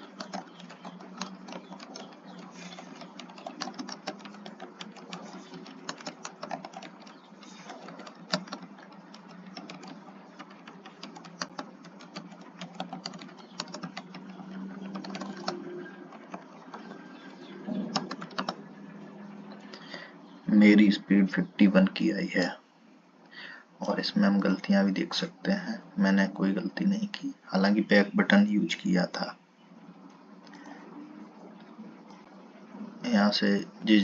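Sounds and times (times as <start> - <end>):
keyboard typing: 0.0 - 19.9.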